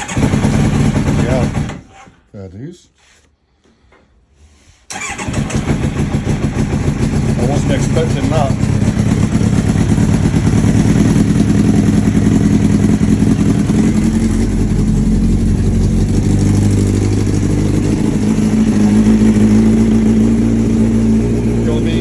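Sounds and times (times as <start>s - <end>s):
motorcycle engine idling unsteadily: 0.0s - 1.8s, 5.4s - 22.0s.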